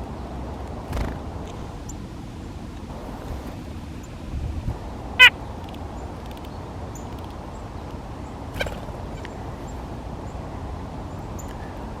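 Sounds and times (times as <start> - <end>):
steady low rumble: 0.0 - 6.2
songbirds chipping: 0.0 - 12.0.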